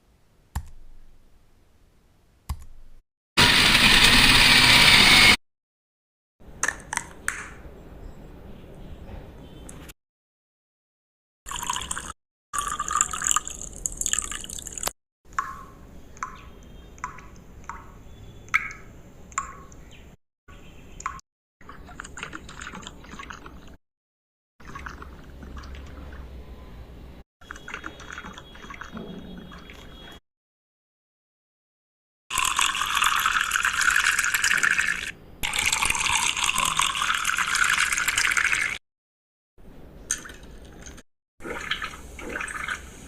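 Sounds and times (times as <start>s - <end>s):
liquid splashing and trickling: 11.5s - 14.9s, 21.6s - 23.8s, 24.6s - 26.4s, 27.4s - 30.2s, 32.3s - 38.8s, 40.1s - 43.0s
liquid dripping: 11.5s - 19.9s.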